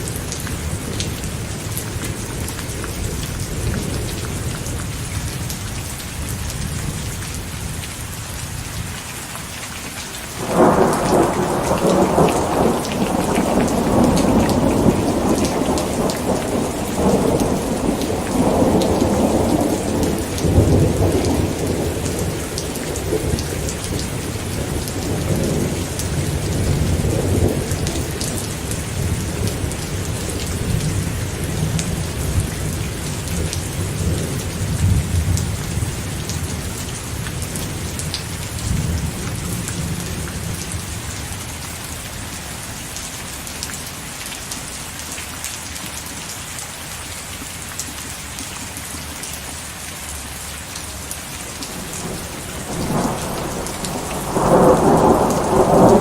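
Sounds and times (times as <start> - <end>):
rain with drops ticking: 0.0 - 56.0
low roll of thunder: 10.4 - 40.7, 51.6 - 56.0.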